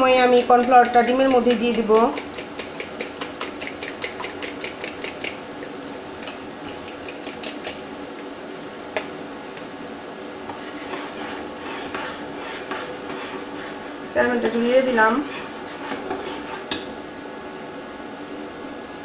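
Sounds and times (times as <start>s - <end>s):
fork beating eggs in a bowl: 0.0s - 5.4s, 6.2s - 7.9s, 10.4s - 16.9s.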